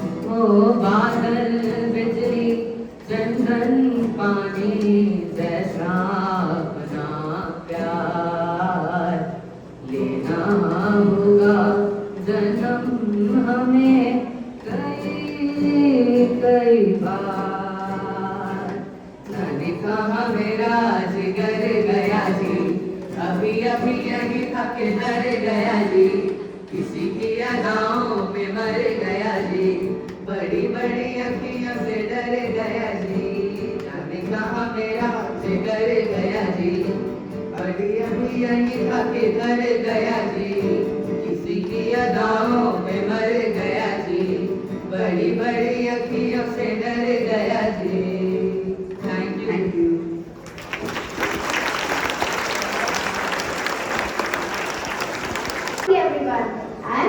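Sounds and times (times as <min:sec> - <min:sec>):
song with sung voices: 0:00.0 - 0:55.9
students singing: 0:05.4 - 0:11.6, 0:37.8 - 0:49.9.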